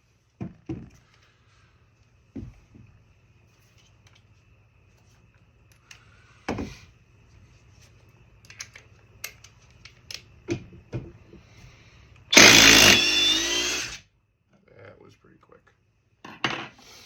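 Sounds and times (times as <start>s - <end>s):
impact driver hammering: 12.3s - 14.0s.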